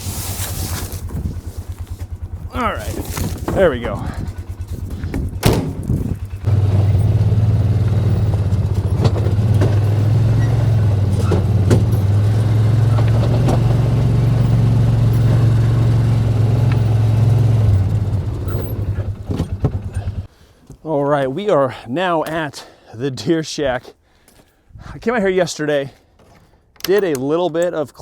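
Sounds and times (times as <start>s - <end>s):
vehicle engine droning: 0.0s - 20.3s
knocks and rattles: 1.0s - 20.3s.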